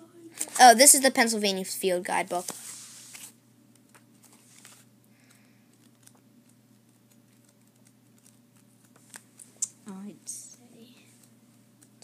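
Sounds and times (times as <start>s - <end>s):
faint steady hum: 0.0s - 12.0s
book pages rustling: 2.4s - 4.9s, 5.7s - 9.5s.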